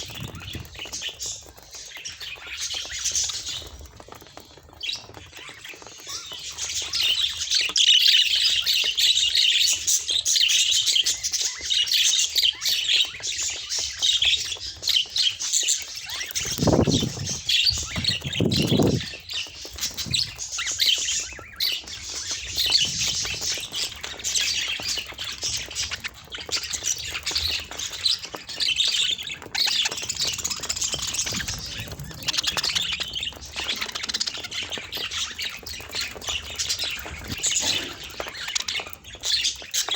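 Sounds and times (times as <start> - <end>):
budgerigars chattering and squawking: 10.5 - 39.9.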